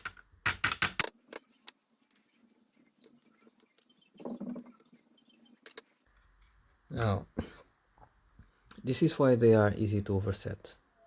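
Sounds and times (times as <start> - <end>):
small metallic clicks of lock parts: 0.0 - 2.2.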